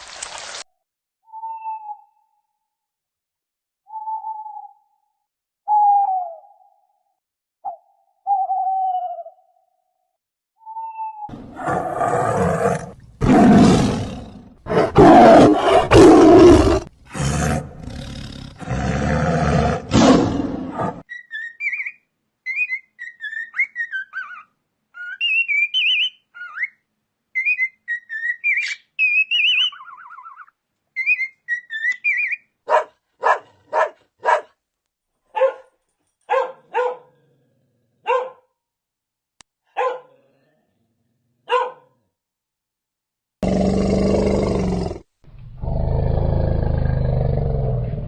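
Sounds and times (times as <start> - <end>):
dog barking: 32.6 - 34.6, 35.3 - 37.2, 38.0 - 38.6, 39.7 - 40.4, 41.4 - 42.1.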